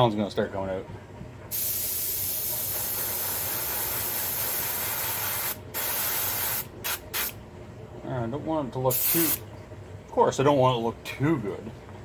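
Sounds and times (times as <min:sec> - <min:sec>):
airbrush spraying hiss: 0:01.5 - 0:07.4, 0:08.9 - 0:09.4.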